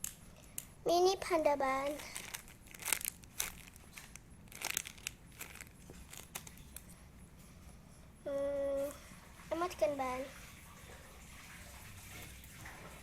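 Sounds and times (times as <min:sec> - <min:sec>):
plastic packaging crinkling: 0:01.6 - 0:06.9.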